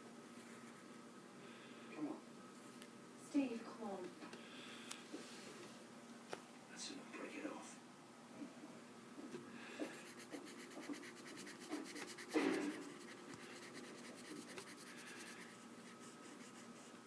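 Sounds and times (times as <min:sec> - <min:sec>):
drawing tool scratching on paper: 0:09.8 - 0:17.0.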